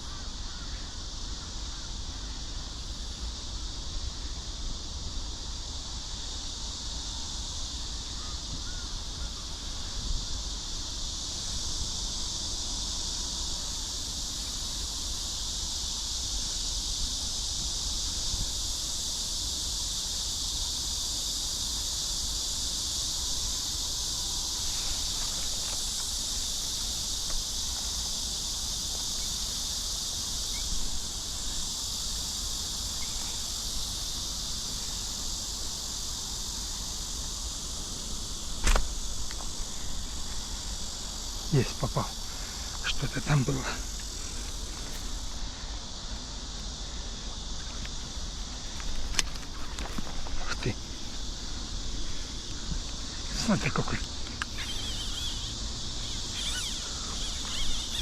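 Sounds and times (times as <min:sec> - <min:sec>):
high-pitched hiss: 0:00.0 - 0:58.0
faint bird calls: 0:54.4 - 0:58.0.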